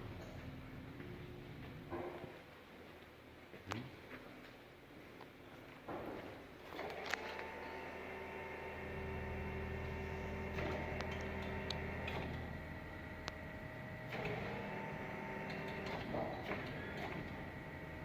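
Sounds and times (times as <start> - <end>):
electric motor whine: 6.8 - 18.0.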